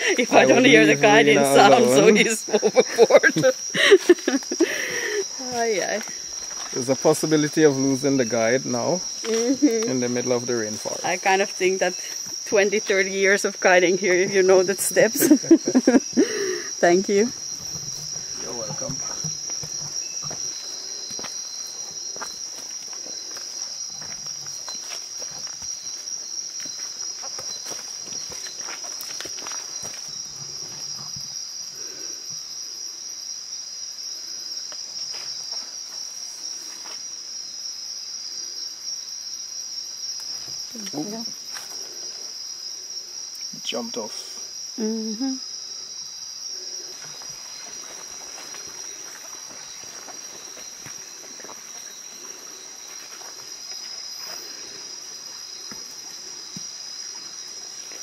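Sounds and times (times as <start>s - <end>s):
crickets chorus: 0.0s - 58.0s
night insects trilling: 0.0s - 58.0s
faint knocks or steps: 17.3s - 22.7s.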